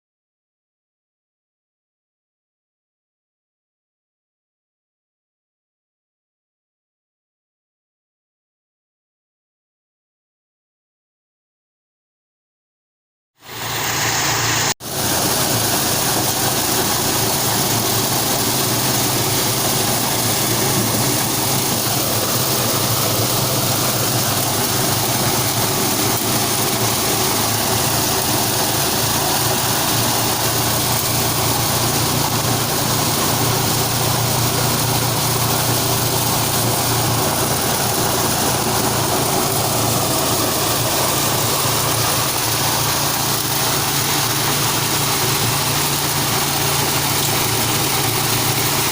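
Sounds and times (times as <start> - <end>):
corn machine engine drone: 13.4 - 48.9.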